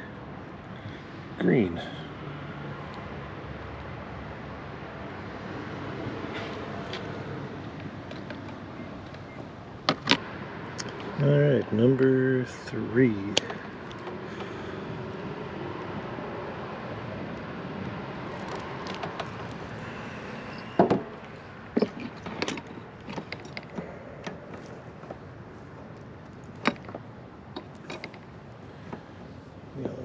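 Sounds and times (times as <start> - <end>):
steady background noise: 0.0 - 30.0
sharp clicks from tools and parts: 26.4 - 27.0, 27.6 - 28.3.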